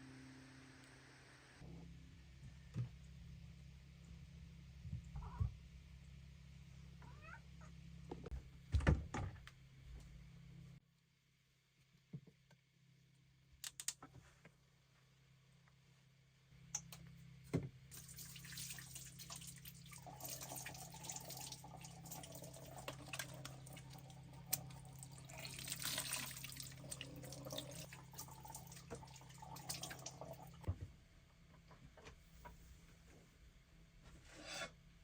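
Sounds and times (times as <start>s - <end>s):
low steady hum: 14.2s - 35.0s
tap water splashing into sink: 18.0s - 30.7s.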